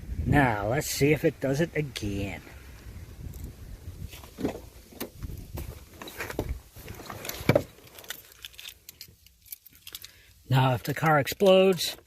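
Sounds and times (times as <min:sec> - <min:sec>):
handling clicks and rustling: 0:03.3 - 0:12.0.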